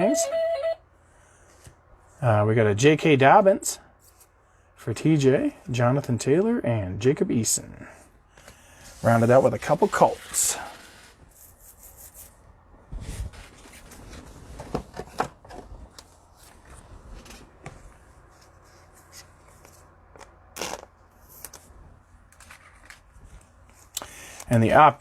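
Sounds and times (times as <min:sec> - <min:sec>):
cards rustling: 0:22.3 - 0:24.4.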